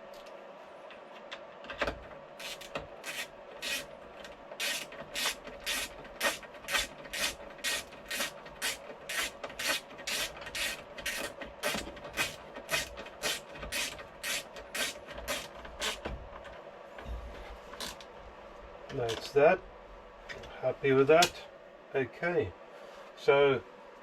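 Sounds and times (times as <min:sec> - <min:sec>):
hand tool rasping on metal: 0:02.4 - 0:03.9, 0:04.6 - 0:16.0.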